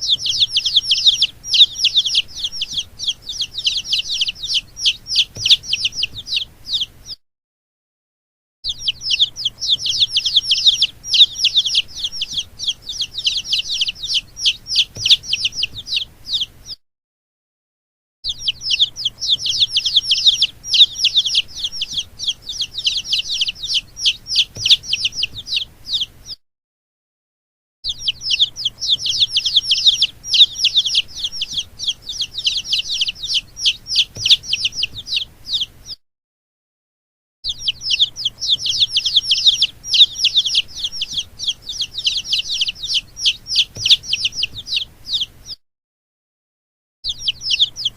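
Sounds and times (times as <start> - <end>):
baby chicks peeping: 0.0 - 7.2, 8.7 - 16.8, 18.3 - 26.4, 27.8 - 36.0, 37.4 - 45.6, 47.0 - 47.9.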